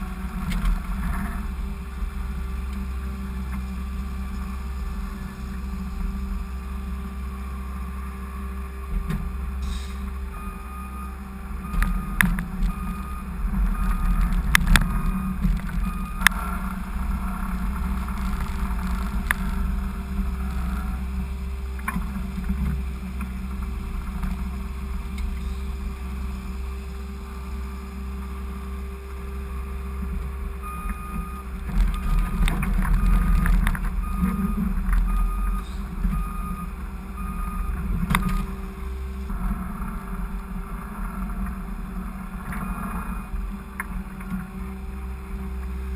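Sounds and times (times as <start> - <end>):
skid steer engine running: 0.0 - 45.9
pulsed reversing beep: 9.8 - 17.5, 30.6 - 32.4, 33.0 - 33.4, 34.0 - 38.5.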